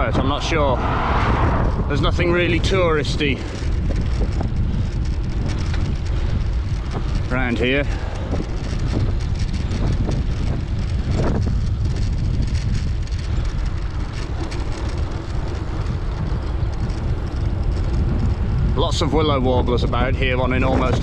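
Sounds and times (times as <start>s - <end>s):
wind rumbling on microphone: 0.0s - 21.0s.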